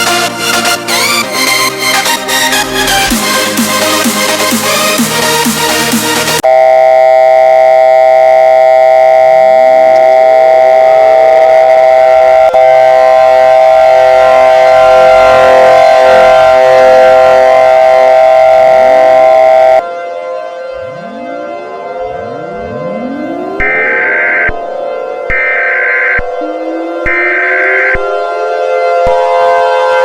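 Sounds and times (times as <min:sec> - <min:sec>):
electronic dance music: 0:00.0 - 0:06.5, 0:20.6 - 0:30.0
electronic alarm tone: 0:06.4 - 0:29.8.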